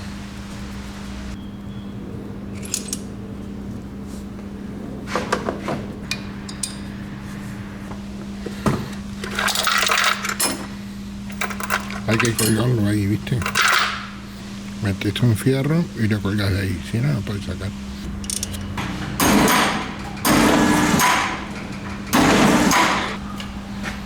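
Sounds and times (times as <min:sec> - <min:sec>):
steady low hum: 0:00.0 - 0:24.0
metal tools clinking and clattering: 0:02.5 - 0:03.1, 0:09.2 - 0:10.7, 0:11.3 - 0:14.0, 0:18.2 - 0:23.2.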